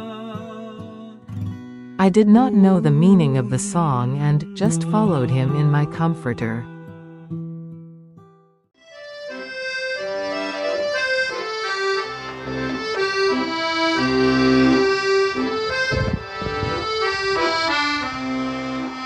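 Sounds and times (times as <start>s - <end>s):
bass accompaniment: 2.0s - 6.8s, 9.0s - 19.0s
slow accordion melody: 2.7s - 7.3s, 8.8s - 19.0s.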